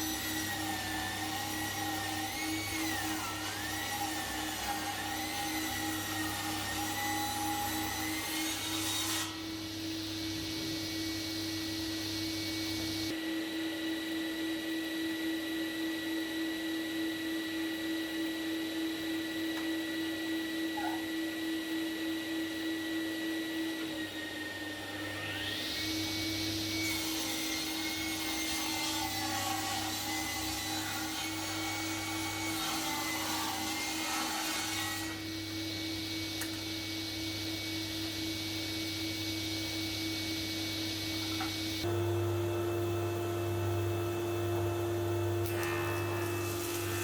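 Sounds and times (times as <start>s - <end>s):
woodworking machine cutting timber: 0.0s - 9.4s, 23.6s - 35.2s, 45.4s - 47.0s.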